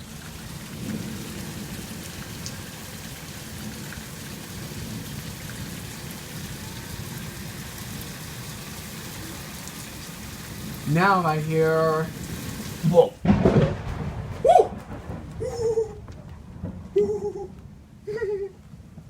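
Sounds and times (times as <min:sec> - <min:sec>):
heavy rain pouring: 0:00.0 - 0:19.0
low rumble: 0:13.2 - 0:19.0.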